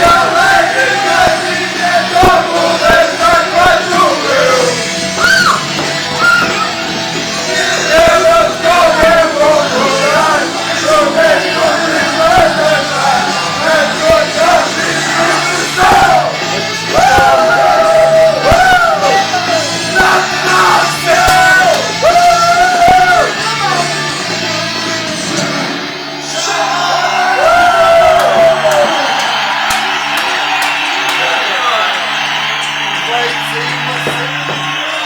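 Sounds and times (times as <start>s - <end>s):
music with shouted singing: 0.0s - 35.0s.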